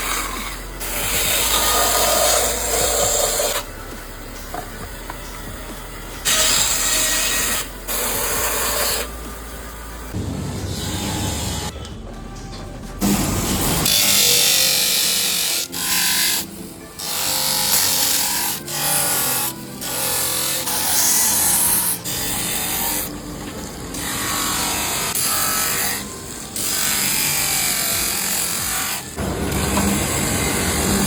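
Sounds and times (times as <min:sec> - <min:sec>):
power tool grinding horn: 0:00.0 - 0:03.7.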